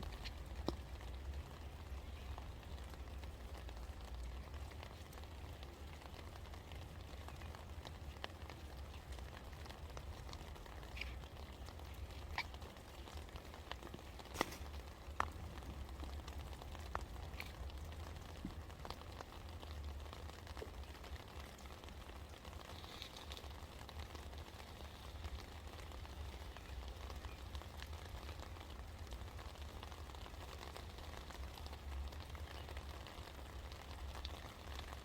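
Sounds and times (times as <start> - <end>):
loud raindrops striking: 0.0 - 35.0
rain pattering: 0.0 - 35.0.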